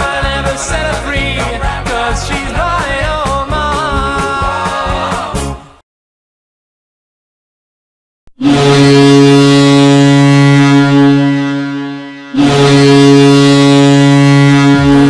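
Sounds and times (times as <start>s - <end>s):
low goal horn blasts: 8.3s - 15.0s.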